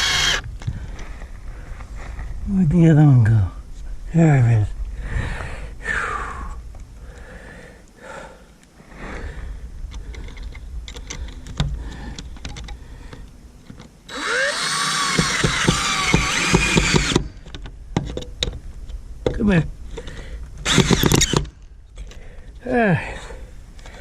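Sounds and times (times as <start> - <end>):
power drill driving screw: 0.0 - 0.4, 14.1 - 17.4, 20.6 - 21.5.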